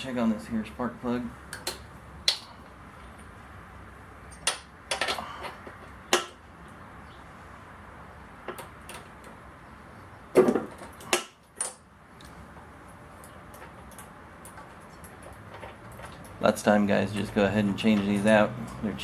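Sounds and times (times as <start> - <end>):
hand tools clicking and knocking: 4.3 - 6.4.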